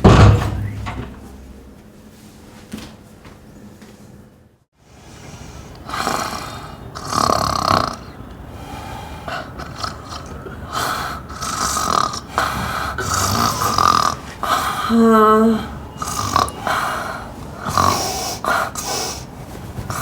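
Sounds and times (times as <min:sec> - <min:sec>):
person snoring loudly: 0:05.8 - 0:19.2.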